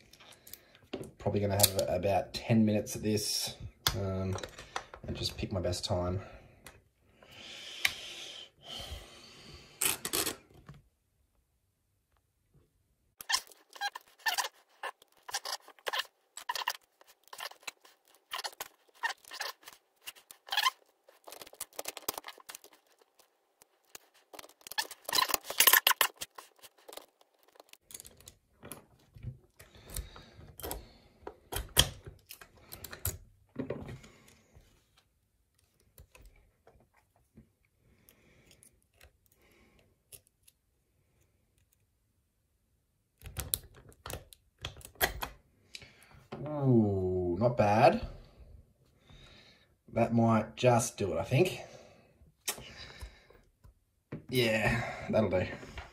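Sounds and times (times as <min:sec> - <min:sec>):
lock picks clicking and scraping: 0:13.2 - 0:33.3, 0:43.2 - 0:45.4.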